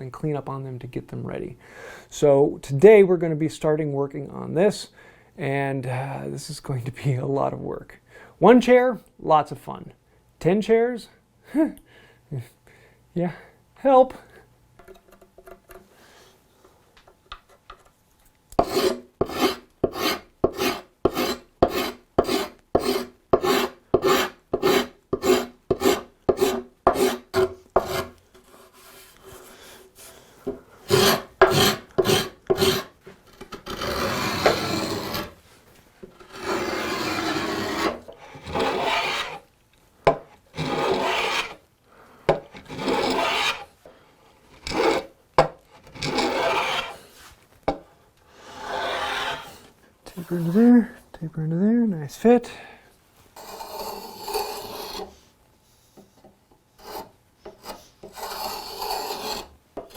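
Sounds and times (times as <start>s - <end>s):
rasp strokes on wood: 18.6s - 29.5s, 30.9s - 33.0s, 33.6s - 35.4s, 36.3s - 39.4s, 40.6s - 41.6s, 42.6s - 43.7s, 45.9s - 47.1s, 48.4s - 49.6s, 53.4s - 55.1s, 56.8s - 59.9s.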